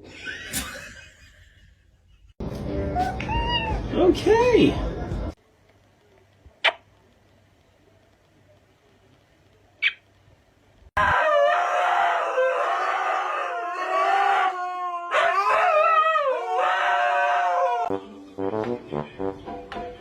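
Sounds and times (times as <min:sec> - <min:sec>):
dog howling: 0:11.0 - 0:17.9.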